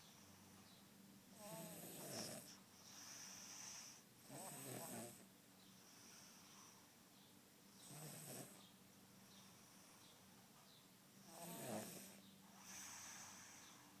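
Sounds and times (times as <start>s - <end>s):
girl snoring faintly: 1.3s - 2.6s, 3.2s - 5.3s, 11.2s - 13.9s.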